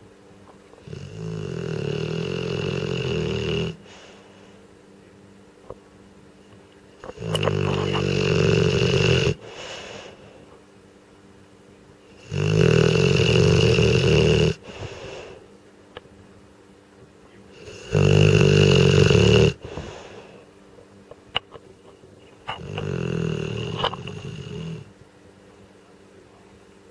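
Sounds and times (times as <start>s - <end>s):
dog snoring loudly: 0.8s - 4.2s, 7.0s - 10.2s, 12.1s - 15.4s, 17.5s - 20.4s, 22.5s - 24.9s.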